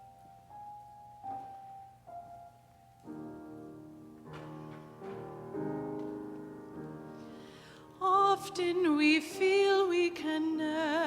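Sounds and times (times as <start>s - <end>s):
soft piano playing: 0.0s - 11.0s.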